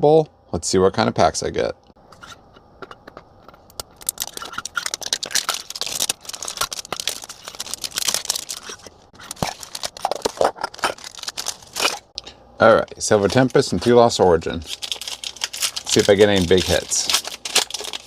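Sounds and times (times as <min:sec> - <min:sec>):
plastic packaging crinkling: 0:03.7 - 0:12.2, 0:12.8 - 0:18.0.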